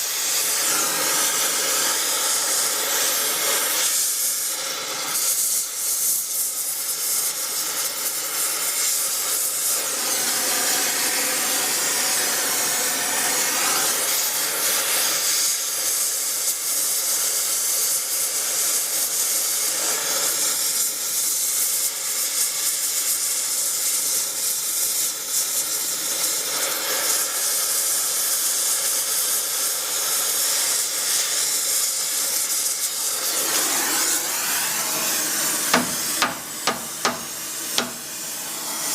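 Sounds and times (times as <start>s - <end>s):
power tool on metal: 33.0s - 38.8s.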